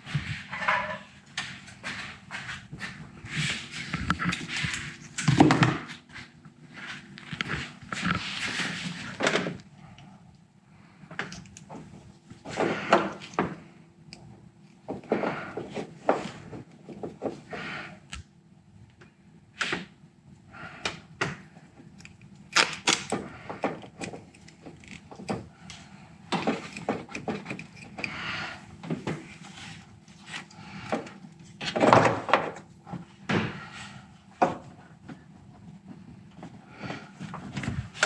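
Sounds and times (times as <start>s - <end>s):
hands handling plastic and tape: 21.3s - 28.1s.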